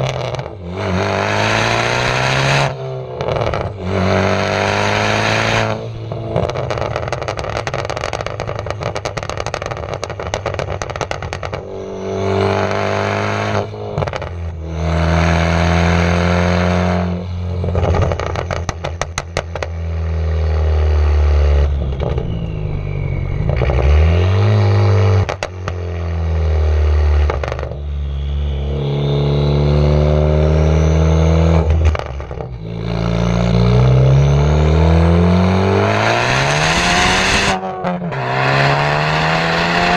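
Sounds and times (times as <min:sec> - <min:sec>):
exhaust pops and crackles: 0:00.0 - 0:00.6, 0:03.1 - 0:03.8, 0:06.2 - 0:11.8, 0:14.0 - 0:14.6, 0:17.6 - 0:20.6, 0:21.6 - 0:23.9, 0:25.1 - 0:26.4, 0:27.1 - 0:27.8, 0:31.7 - 0:32.6
car exhaust revving: 0:00.0 - 0:39.9.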